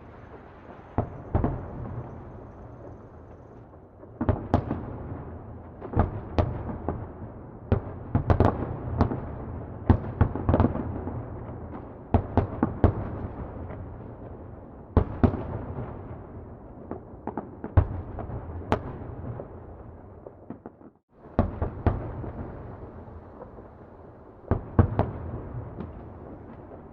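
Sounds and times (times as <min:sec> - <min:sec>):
distant fireworks bangs: 0:00.0 - 0:14.3, 0:20.2 - 0:26.9.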